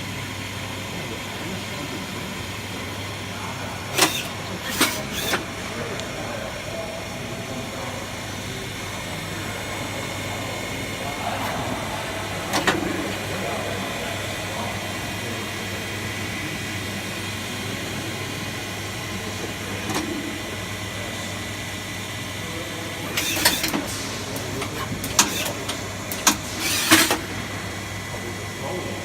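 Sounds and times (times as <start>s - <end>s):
lathe humming: 0.0s - 29.0s
short sharp machine noises: 3.8s - 5.7s, 23.0s - 27.4s.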